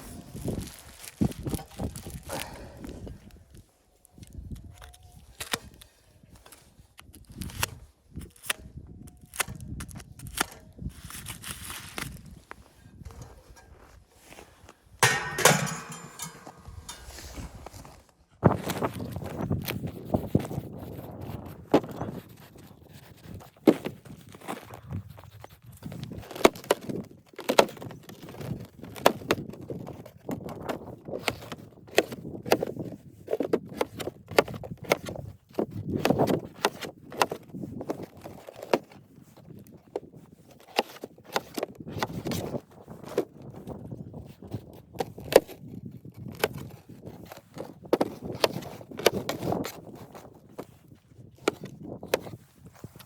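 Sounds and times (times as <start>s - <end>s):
rustling: 10.2s - 19.8s
footsteps: 13.0s - 18.2s
knocks and clicks: 15.0s - 17.2s.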